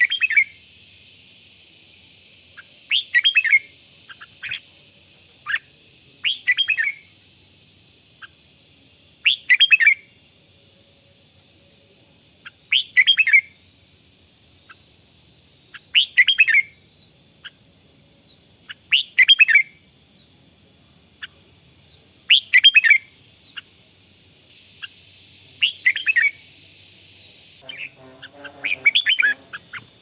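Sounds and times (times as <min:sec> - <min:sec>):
bird singing: 0:00.0 - 0:00.6, 0:02.4 - 0:07.2, 0:09.1 - 0:10.2, 0:12.2 - 0:13.6, 0:14.6 - 0:30.0
faint steady high tone: 0:24.6 - 0:30.0.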